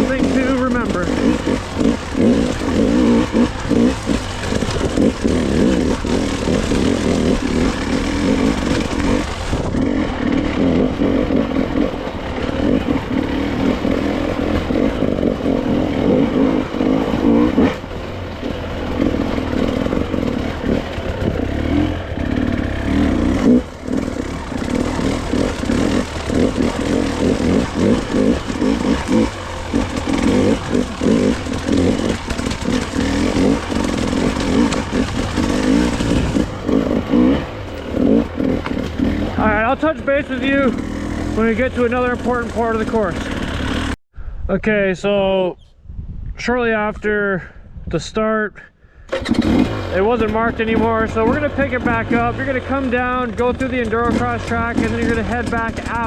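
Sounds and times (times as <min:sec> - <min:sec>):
dirt bike engine revving: 0:00.0 - 0:44.0, 0:49.1 - 0:56.0
bike clattering over ground: 0:23.9 - 0:36.6.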